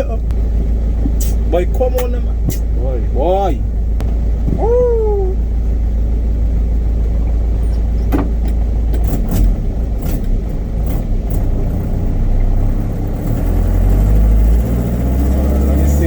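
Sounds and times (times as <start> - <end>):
truck engine rumbling: 0.0 - 16.0.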